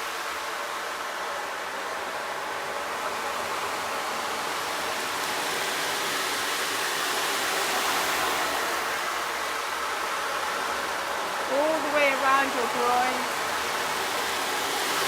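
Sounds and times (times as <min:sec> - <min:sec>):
flowing water hiss: 0:00.0 - 0:15.0.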